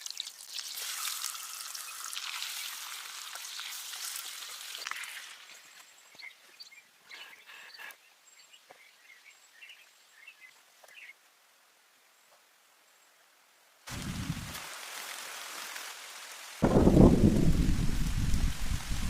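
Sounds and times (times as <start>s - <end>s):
faint bird chirps: 5.4s - 11.2s
hissing crackling noise: 13.9s - 19.0s.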